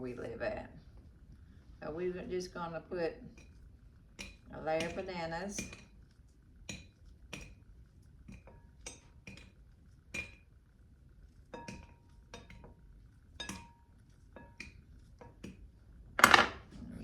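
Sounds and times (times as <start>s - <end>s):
utensil clinking against dish: 11.6s - 12.8s, 13.4s - 13.8s.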